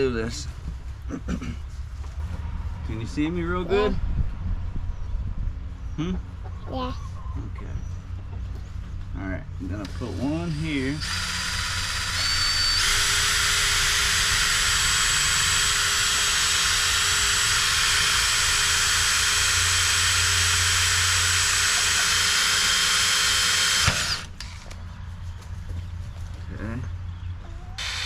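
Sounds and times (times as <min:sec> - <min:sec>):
power drill whining: 0:09.8 - 0:24.7, 0:27.8 - 0:28.0.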